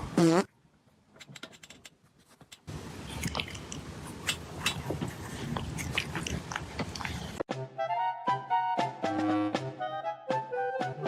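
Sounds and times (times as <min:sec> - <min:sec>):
animal chewing and crunching: 0:02.5 - 0:07.5.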